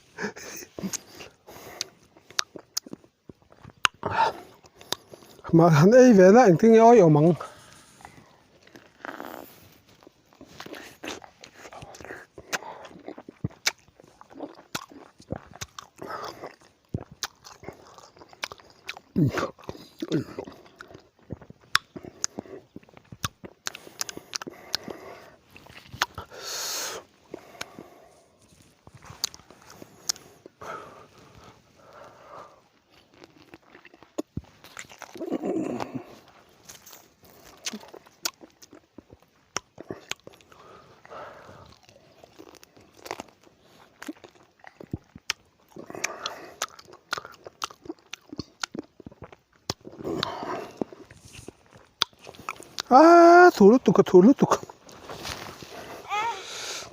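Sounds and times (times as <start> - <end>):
wet crunchy chewing: 0.2 - 56.9
wet mouth clicks and smacks: 25.6 - 26.3, 44.1 - 52.9.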